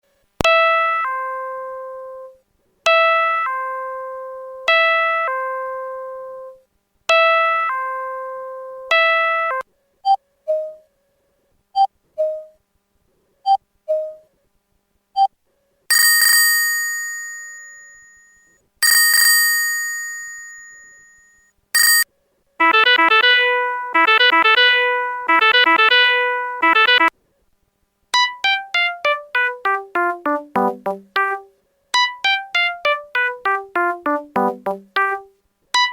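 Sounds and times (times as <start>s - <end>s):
long bright ringing chimes: 15.9s - 21.2s
ding-dong alert chime: 15.9s - 22.0s
short electronic beeps: 21.8s - 22.0s
electronic alert melody: 30.3s - 31.4s, 34.1s - 35.2s.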